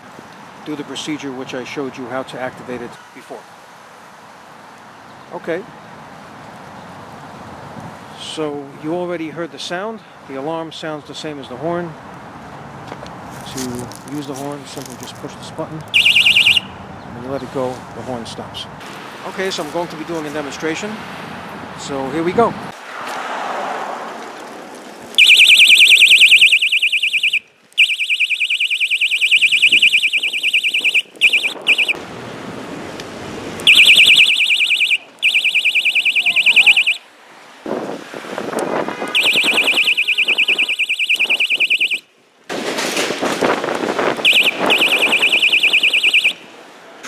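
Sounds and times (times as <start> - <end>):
electronic bicycle horn: 16.0 - 16.7, 25.2 - 32.0, 39.1 - 42.0, 44.2 - 46.4.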